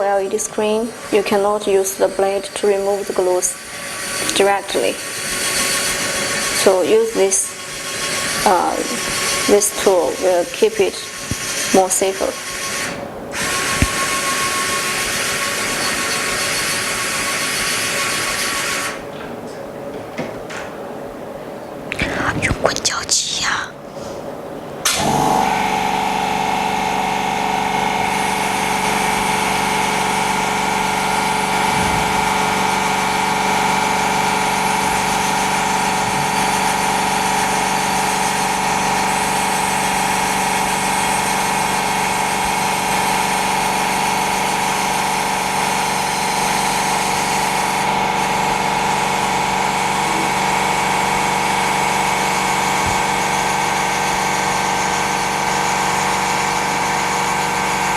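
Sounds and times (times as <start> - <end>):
small electric motor running: 0.4 - 19.0, 24.9 - 57.9.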